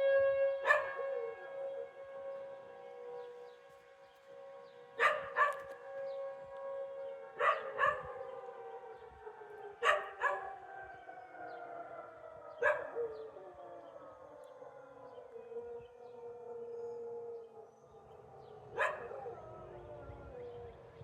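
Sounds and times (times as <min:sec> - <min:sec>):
warning siren wailing: 0:00.0 - 0:21.0
dog barking: 0:00.6 - 0:01.0, 0:05.0 - 0:05.8, 0:07.3 - 0:08.2, 0:09.8 - 0:10.6, 0:12.6 - 0:13.0, 0:18.7 - 0:19.4.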